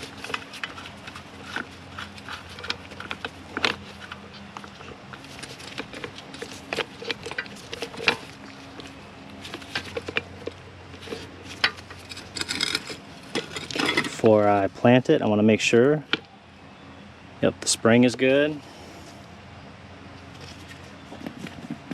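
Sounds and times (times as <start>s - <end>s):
steady low hum: 0.0s - 21.9s
metal parts clicking and knocking: 9.7s - 14.2s.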